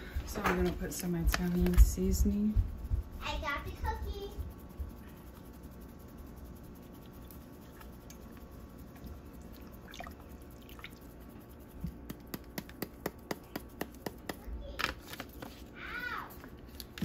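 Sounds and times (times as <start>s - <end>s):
spice container shaking clicks: 11.8s - 14.4s.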